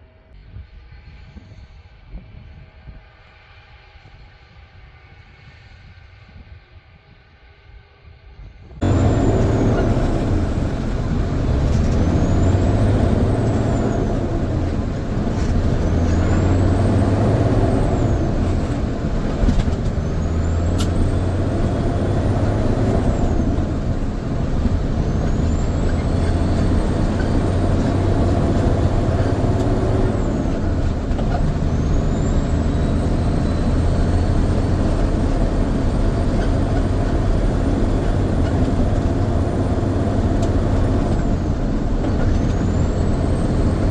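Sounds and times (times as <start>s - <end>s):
truck engine running: 8.8s - 43.9s.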